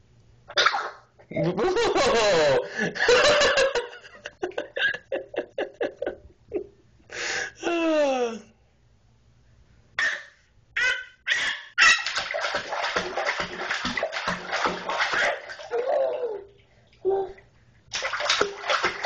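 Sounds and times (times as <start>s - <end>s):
baby splashing water in bathtub: 11.8s - 19.0s.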